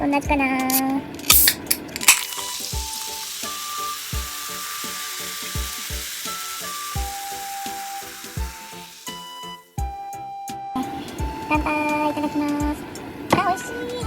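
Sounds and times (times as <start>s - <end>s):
drink fizzing: 1.3s - 9.8s
background music with beat: 2.4s - 13.0s.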